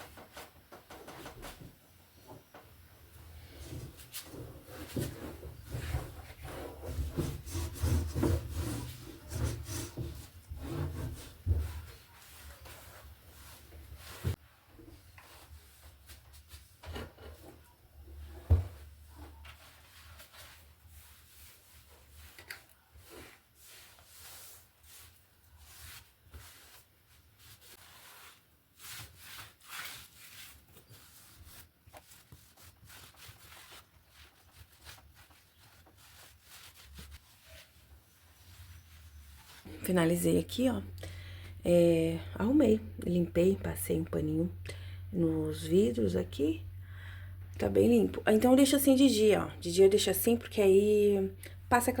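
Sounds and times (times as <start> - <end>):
cloth rubbing over surfaces: 3.2 - 16.8, 18.0 - 40.9.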